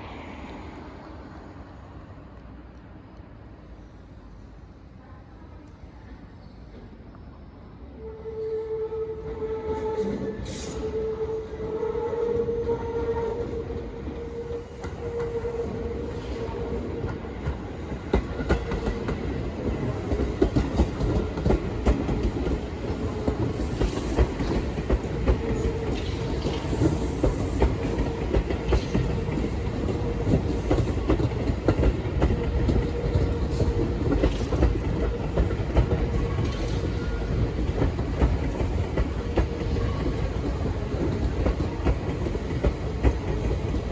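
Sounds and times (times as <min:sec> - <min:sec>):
train wheels clattering: 0:17.0 - 0:43.9.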